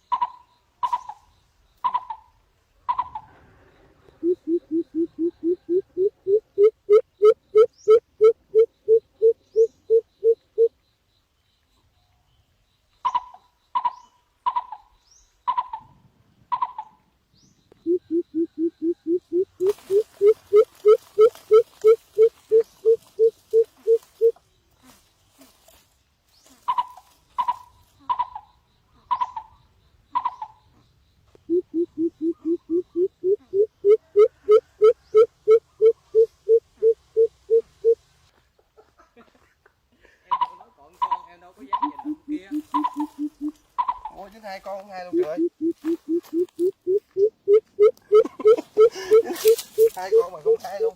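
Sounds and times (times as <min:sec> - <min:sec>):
bird hooting: 0:04.0 - 0:10.7, 0:17.8 - 0:24.4, 0:31.4 - 0:38.0, 0:40.3 - 0:44.2, 0:45.0 - 0:50.9.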